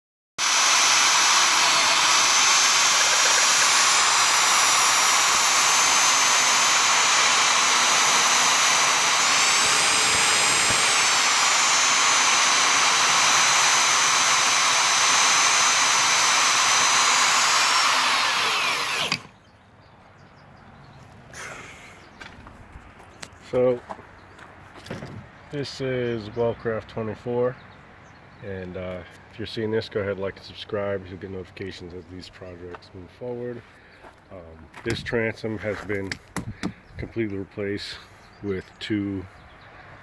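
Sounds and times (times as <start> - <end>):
power tool motor whining: 0.4 - 19.4.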